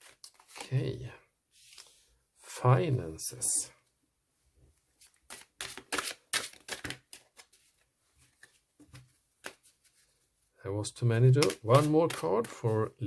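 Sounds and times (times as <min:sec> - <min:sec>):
cards being shuffled: 0:00.0 - 0:00.8, 0:01.6 - 0:02.0, 0:05.0 - 0:10.2, 0:11.3 - 0:13.0
card taps: 0:11.3 - 0:12.6.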